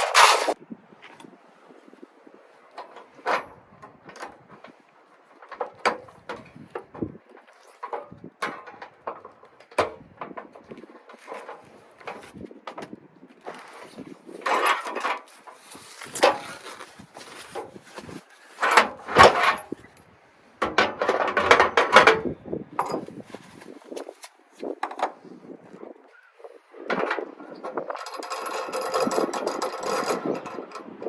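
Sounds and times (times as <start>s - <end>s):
cooking gear knocking and clattering: 5.4s - 19.8s, 20.6s - 23.4s
rustling: 13.2s - 20.0s, 22.9s - 24.8s.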